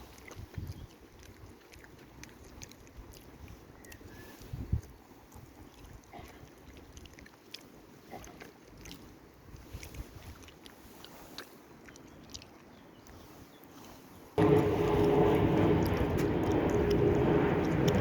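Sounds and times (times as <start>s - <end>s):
faint low rumble: 14.3s - 18.0s
small clicks and ticks: 15.0s - 18.0s.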